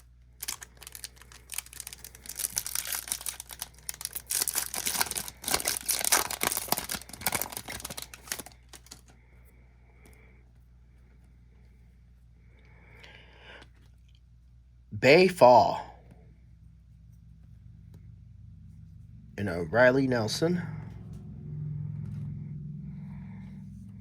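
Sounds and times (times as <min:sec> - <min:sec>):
foil wrapper tearing and crinkling: 0:00.0 - 0:09.1.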